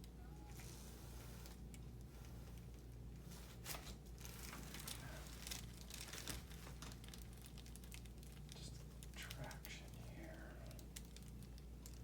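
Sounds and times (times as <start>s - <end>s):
steady low hum: 0.0s - 12.0s
crinkling and rustling on table: 0.5s - 8.8s.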